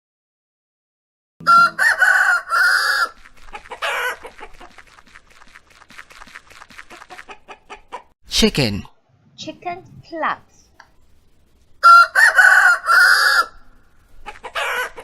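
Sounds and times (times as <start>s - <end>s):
rooster crowing: 1.4s - 3.2s, 11.8s - 13.8s, 14.4s - 15.0s
chickens clucking softly: 6.9s - 8.1s, 14.2s - 15.0s.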